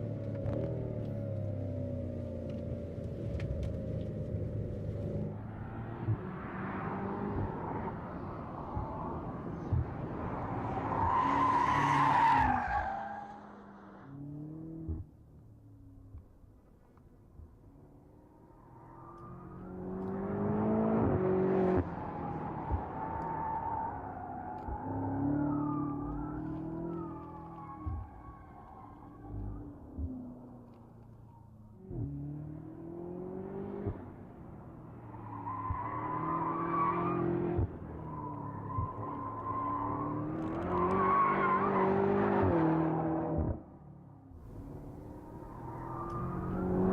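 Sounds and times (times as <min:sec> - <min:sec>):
car engine accelerating hard: 0:44.4 - 0:46.9.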